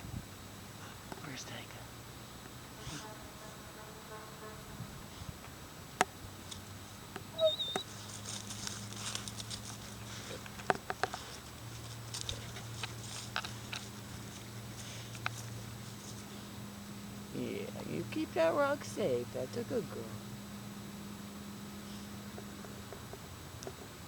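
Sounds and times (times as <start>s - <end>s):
dog pawing and scraping: 7.8s - 16.3s.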